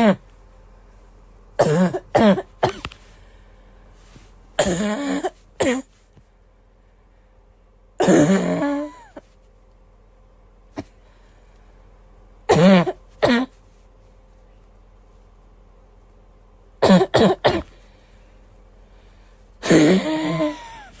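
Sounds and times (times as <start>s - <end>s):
girl coughing: 1.6s - 2.9s, 4.6s - 5.9s, 8.0s - 9.2s, 12.5s - 13.6s, 16.8s - 17.8s, 19.6s - 21.0s.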